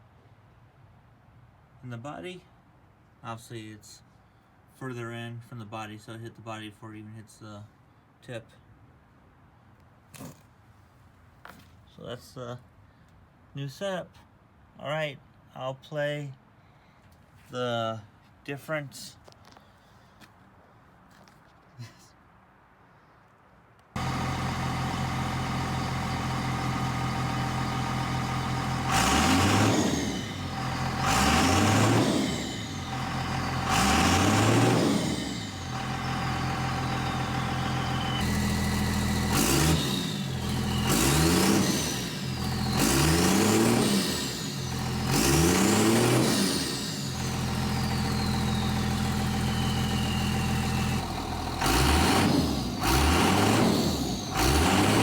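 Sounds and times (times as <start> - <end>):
diesel engine idling and revving: 24.0 - 55.0
turbo whistling: 24.1 - 43.8, 47.1 - 55.0.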